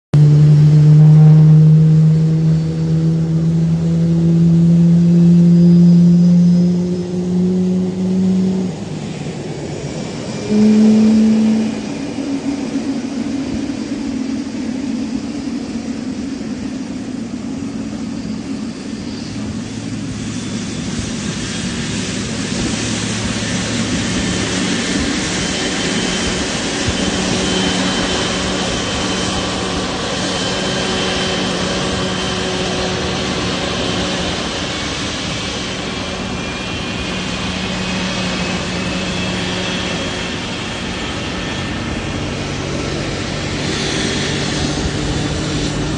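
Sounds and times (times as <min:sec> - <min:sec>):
jet engine whine and rush: 0:00.1 - 0:45.9
faint rising tone: 0:10.0 - 0:13.2.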